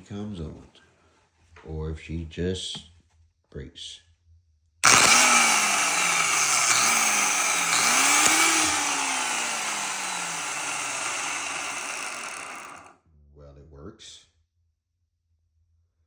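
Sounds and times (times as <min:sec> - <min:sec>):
paint sprayer motor whirring: 0:04.8 - 0:12.9.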